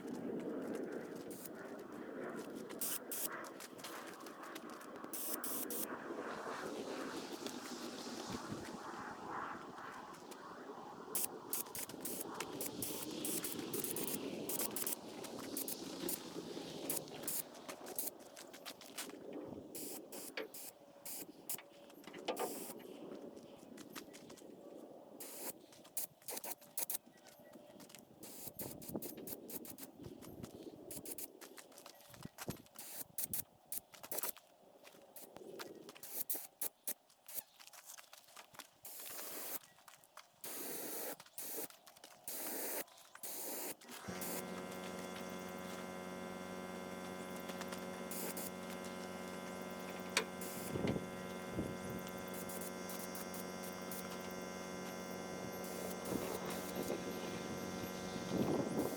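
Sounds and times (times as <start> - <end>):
paint spray gun hissing: 1.3 - 1.5, 2.8 - 3.4, 5.1 - 6.0, 11.1 - 18.1, 19.8 - 21.6, 22.3 - 22.8, 25.2 - 27.0, 28.2 - 29.9, 30.9 - 31.3, 32.8 - 34.3, 35.9 - 37.4, 38.8 - 39.6, 40.4 - 41.7, 42.3 - 58.9
electric motor humming: 11.2 - 18.1, 42.3 - 58.9.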